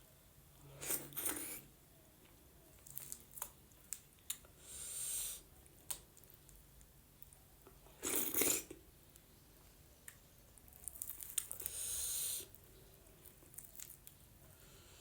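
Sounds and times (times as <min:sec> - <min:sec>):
person chewing: 0:08.0 - 0:08.8.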